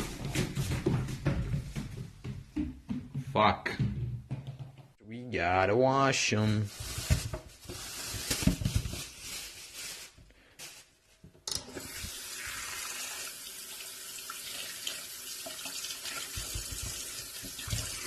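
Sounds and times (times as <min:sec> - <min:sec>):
tap water running into sink: 0:11.5 - 0:18.0.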